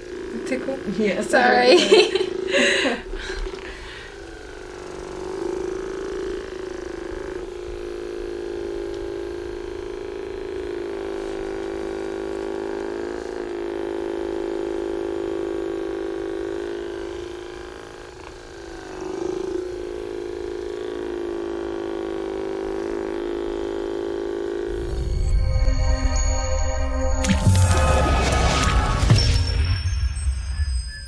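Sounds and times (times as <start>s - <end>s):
electric massager motor hum: 0.0s - 31.0s.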